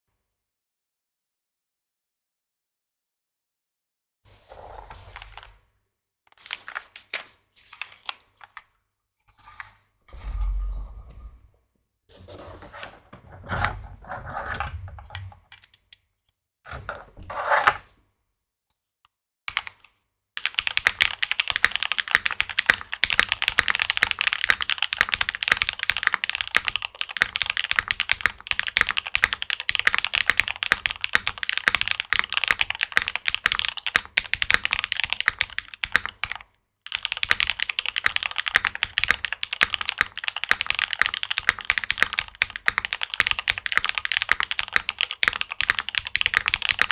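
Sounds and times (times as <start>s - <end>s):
mechanical keyboard typing: 19.5s - 46.9s.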